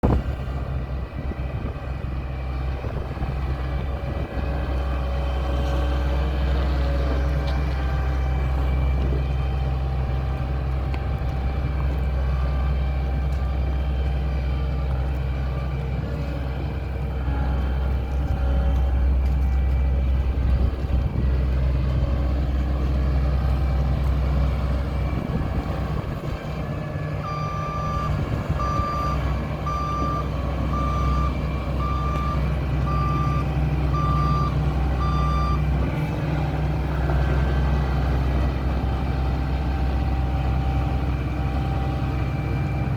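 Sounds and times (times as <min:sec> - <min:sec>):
combine harvester engine running: 0:00.0 - 0:42.9
reversing alarm beeping: 0:24.8 - 0:36.2.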